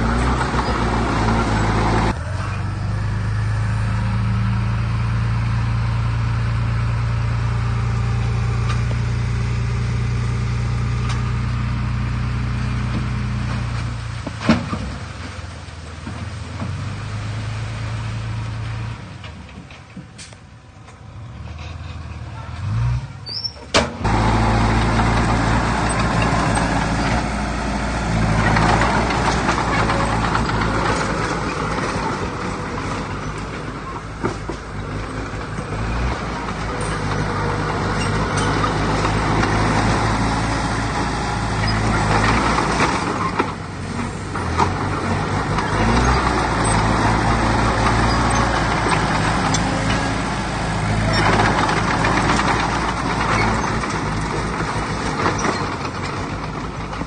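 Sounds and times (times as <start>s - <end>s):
heavy machinery diesel engine: 0.0s - 57.0s.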